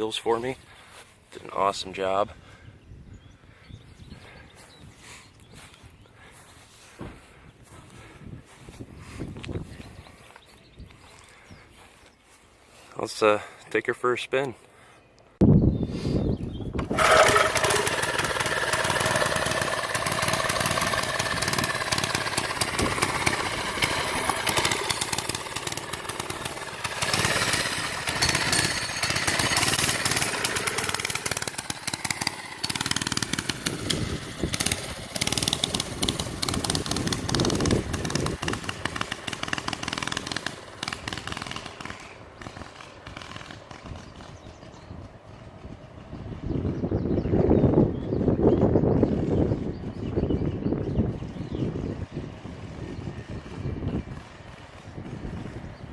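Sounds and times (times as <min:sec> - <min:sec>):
small engine running: 0:16.8 - 0:47.3, 0:48.9 - 0:55.9.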